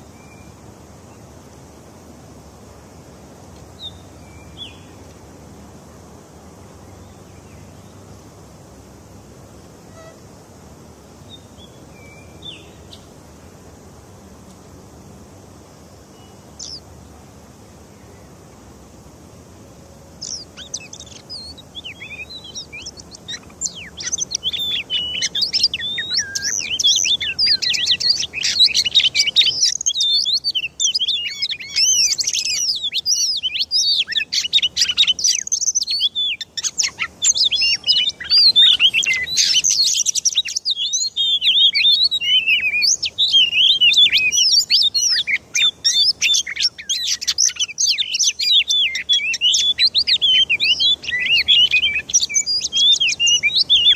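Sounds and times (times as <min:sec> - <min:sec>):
bird singing chirps and whistles: 0:00.0 - 0:00.6, 0:03.8 - 0:05.0, 0:11.3 - 0:13.1, 0:16.2 - 0:16.8, 0:20.2 - 0:53.9.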